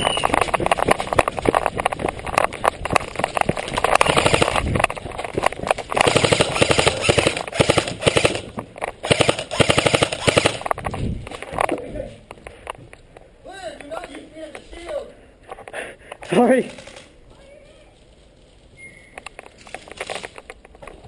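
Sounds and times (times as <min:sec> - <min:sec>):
airsoft guns firing full auto: 0:04.0 - 0:04.6, 0:05.9 - 0:10.7.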